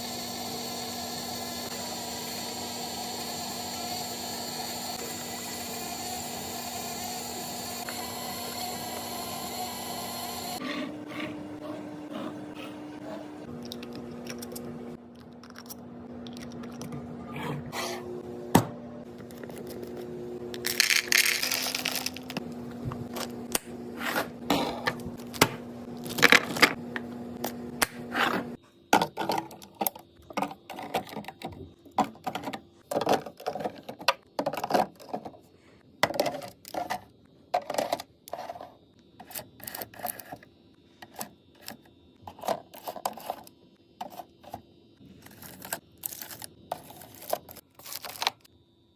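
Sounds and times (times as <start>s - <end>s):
fridge humming: 0.0s - 48.5s
packets rustling: 20.6s - 22.4s, 45.1s - 48.4s
containers clicking and scraping: 28.2s - 40.4s, 41.0s - 44.6s, 45.2s - 48.4s.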